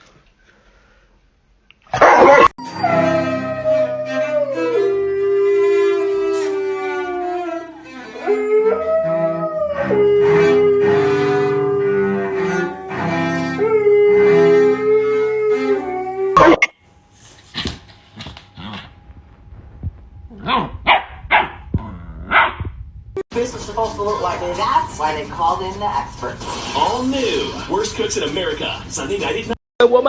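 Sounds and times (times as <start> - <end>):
dog howling: 2.0 - 16.4
instrumental music: 2.6 - 16.6.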